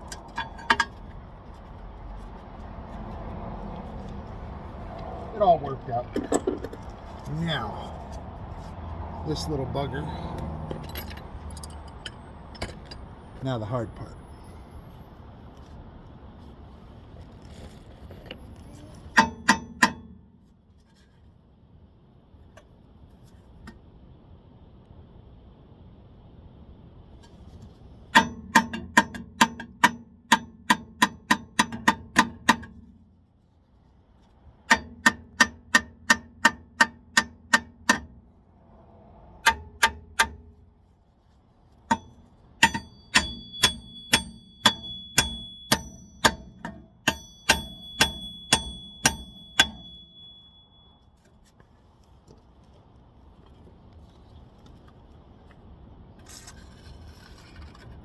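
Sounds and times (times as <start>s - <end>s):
hammer striking steel hub: 0.0s - 1.1s, 19.1s - 20.3s, 28.0s - 33.0s, 34.7s - 38.2s, 39.4s - 40.6s, 41.9s - 51.0s.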